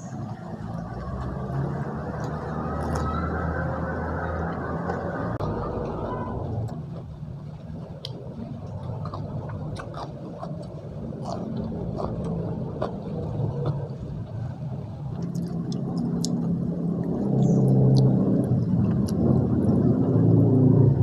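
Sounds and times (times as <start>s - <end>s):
close chewing: 0.0s - 3.7s, 6.6s - 20.4s
steady low rumble: 0.0s - 21.0s
sharp mouth clicks: 8.0s - 13.9s, 15.2s - 19.8s.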